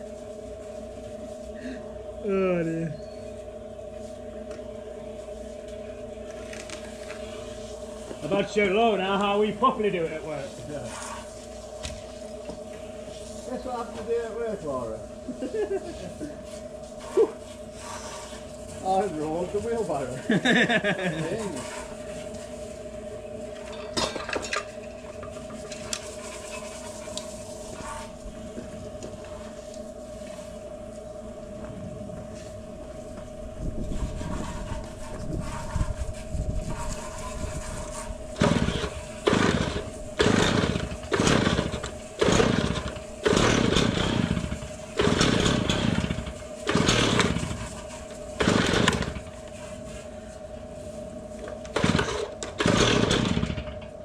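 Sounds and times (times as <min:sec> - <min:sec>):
steady hum: 0:00.0 - 0:54.0
small engine blipping: 0:37.6 - 0:47.8.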